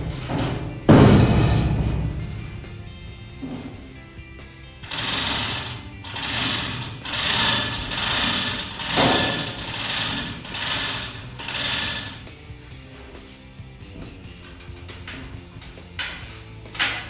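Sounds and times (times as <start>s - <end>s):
background music: 0.0s - 17.0s
metalworking tool running: 4.8s - 12.5s.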